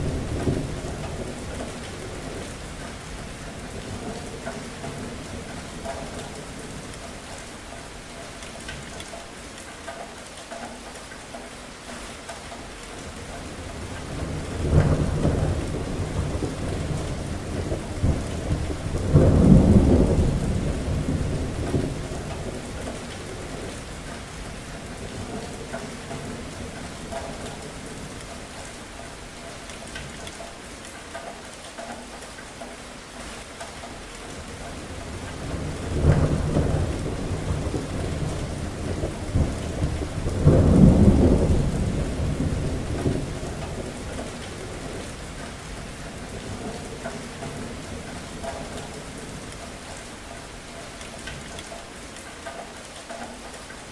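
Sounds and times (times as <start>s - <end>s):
rolling thunder: 0.0s - 6.9s, 13.8s - 28.2s, 34.4s - 49.6s
steady rain falling: 0.0s - 53.9s.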